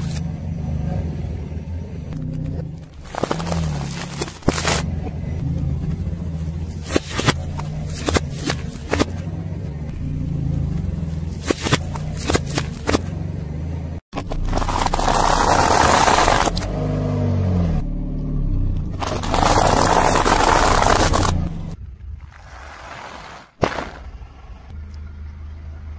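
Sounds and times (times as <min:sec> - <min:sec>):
car engine running: 0:00.0 - 0:22.4
tyre crushing objects: 0:02.9 - 0:04.9, 0:06.8 - 0:09.2, 0:11.4 - 0:13.1, 0:14.2 - 0:16.7, 0:19.0 - 0:21.5, 0:22.4 - 0:24.2.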